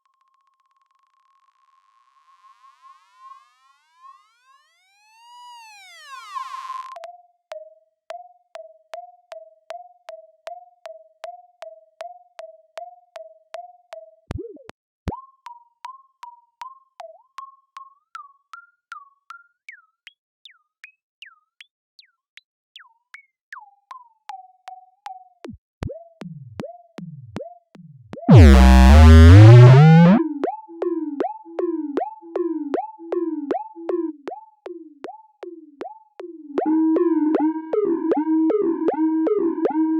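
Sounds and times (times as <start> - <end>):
electronic robot blips: 28.3 - 30.2
sweeping electronic blast: 28.3 - 30.2.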